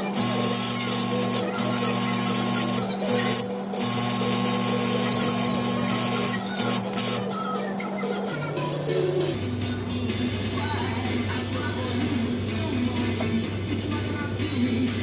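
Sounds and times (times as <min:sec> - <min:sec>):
welding arc hissing: 0:00.0 - 0:07.3.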